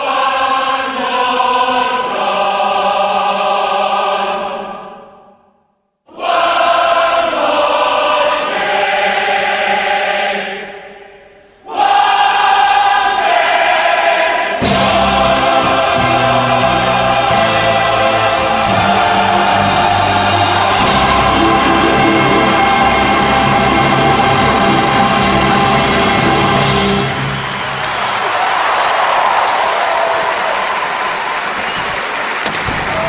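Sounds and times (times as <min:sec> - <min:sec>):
choir singing held chords: 0:00.0 - 0:31.5
deeper accompaniment: 0:14.6 - 0:28.6.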